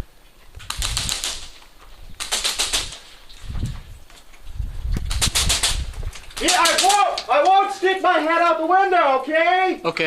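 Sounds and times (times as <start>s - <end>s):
airsoft rifle firing bursts: 0.7s - 1.6s, 2.2s - 3.1s, 5.1s - 5.8s.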